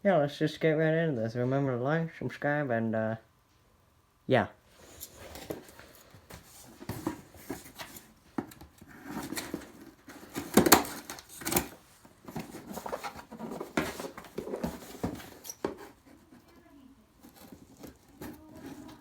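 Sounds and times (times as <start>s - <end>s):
box and packaging being handled: 4.7s - 19.0s
packaging scrape: 4.8s - 16.4s, 17.2s - 19.0s.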